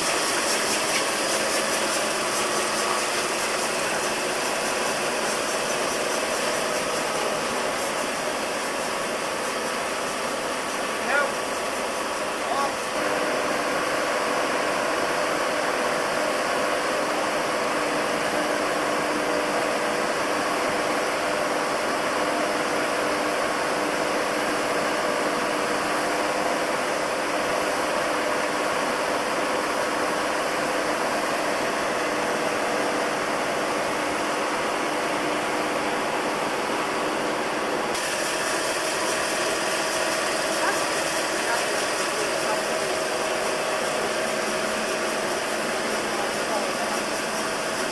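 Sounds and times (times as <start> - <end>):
compressed air rushing through hose: 0.0 - 13.7, 37.9 - 47.9
air compressor humming: 0.0 - 47.9.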